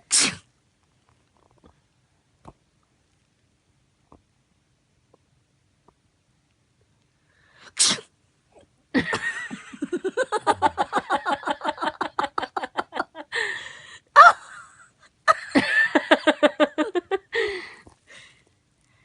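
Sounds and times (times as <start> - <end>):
rapid laughter: 9.0 - 13.3.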